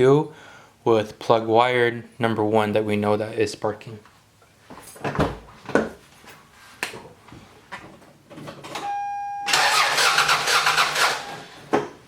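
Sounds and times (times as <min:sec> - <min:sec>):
short beep: 0:08.8 - 0:09.9
engine cranking without firing: 0:09.5 - 0:11.6.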